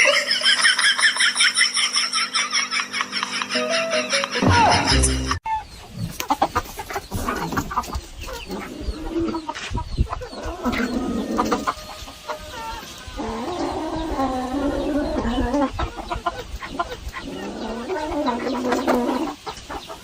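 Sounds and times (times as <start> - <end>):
chickens clucking: 0.0 - 20.0.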